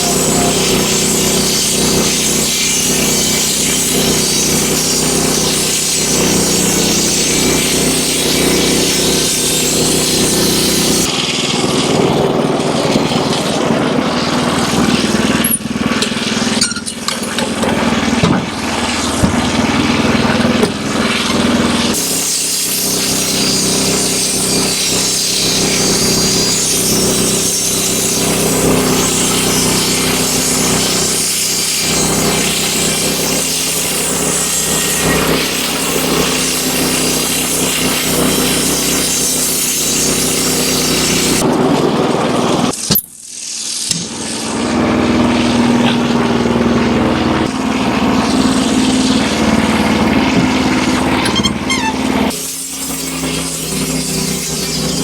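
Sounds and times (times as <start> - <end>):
engine humming: 0.0 - 22.3, 44.2 - 55.0
band saw blade sawing wood: 0.0 - 41.6, 44.0 - 55.0.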